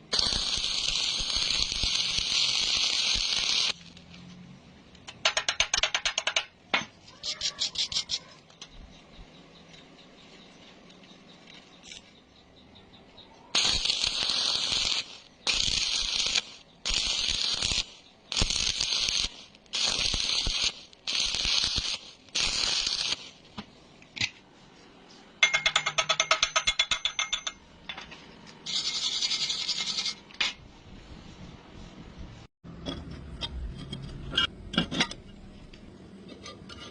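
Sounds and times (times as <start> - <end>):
hand tool scraping metal: 28.7 - 30.6, 36.2 - 36.9.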